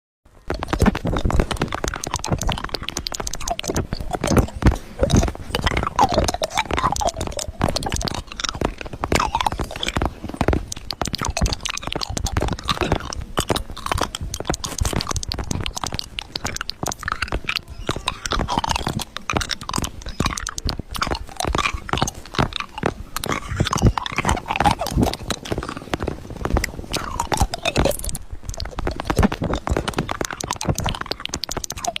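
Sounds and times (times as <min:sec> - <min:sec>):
crunching and crackling: 0:00.3 - 0:32.0.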